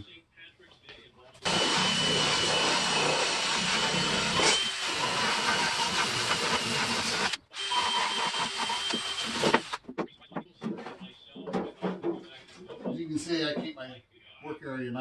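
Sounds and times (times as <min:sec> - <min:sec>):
electric drill sanding: 0:01.4 - 0:09.8.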